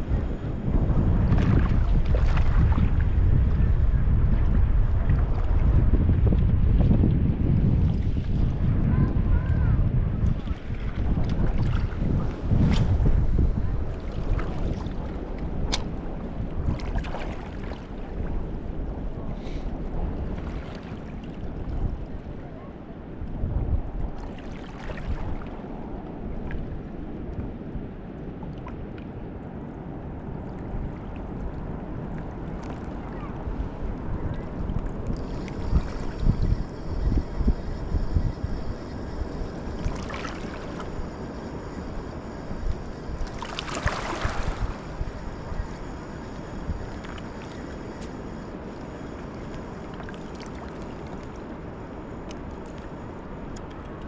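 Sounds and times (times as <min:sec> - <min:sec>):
wind buffeting microphone: 0:00.0 - 0:54.0
river water roaring: 0:38.7 - 0:54.0
faint ticks: 0:53.5 - 0:54.0.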